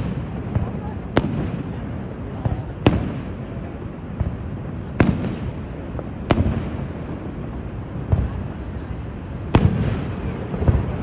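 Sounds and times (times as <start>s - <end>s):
faint firework pops: 0.0s - 1.8s, 4.1s - 7.2s, 9.5s - 11.0s
fireworks bangs: 0.0s - 11.0s.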